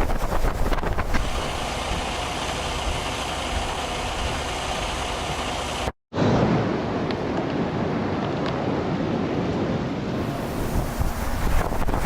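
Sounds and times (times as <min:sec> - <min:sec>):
constant rushing noise: 0:00.0 - 0:05.9, 0:07.0 - 0:12.0
vehicle engine running: 0:01.2 - 0:05.9.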